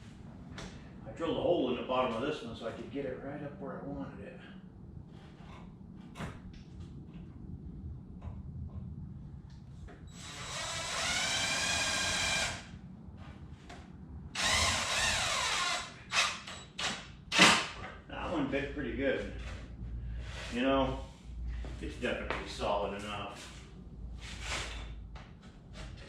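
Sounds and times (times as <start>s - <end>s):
cordless drill whining: 10.1s - 12.7s, 14.4s - 16.8s.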